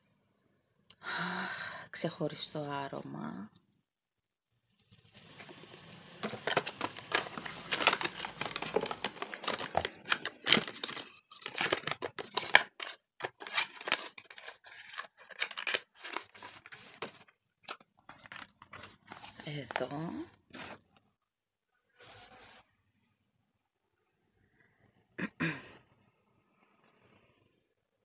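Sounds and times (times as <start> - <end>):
packaging crinkling and tearing: 5.2 - 20.9.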